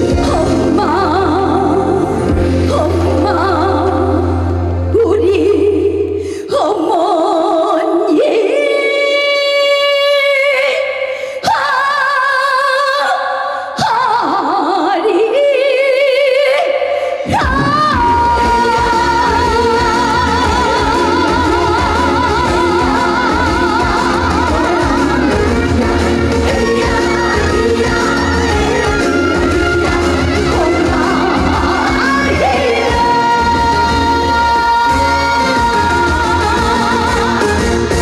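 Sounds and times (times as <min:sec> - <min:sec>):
band with bass playing: 0:00.0 - 0:05.0, 0:17.5 - 0:38.0
woman singing with vibrato: 0:00.0 - 0:38.0.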